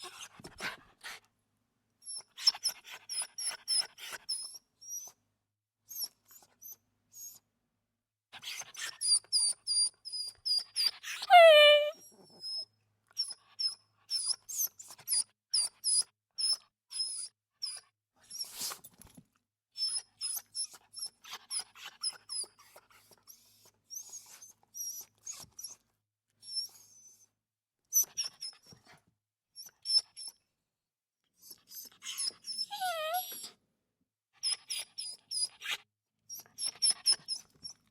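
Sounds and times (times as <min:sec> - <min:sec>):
small dog whimpering: 0:10.8 - 0:12.6, 0:31.4 - 0:33.6.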